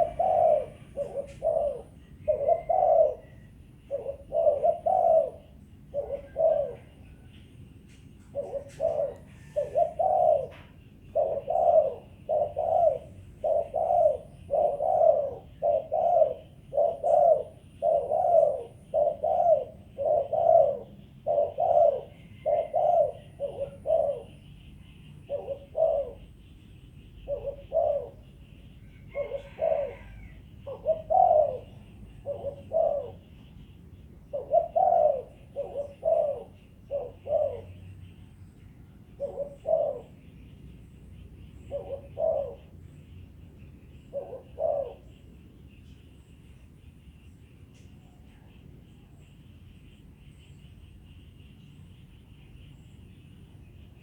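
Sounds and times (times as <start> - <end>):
dove cooing: 0.0 - 40.3, 41.5 - 43.3, 43.9 - 45.4.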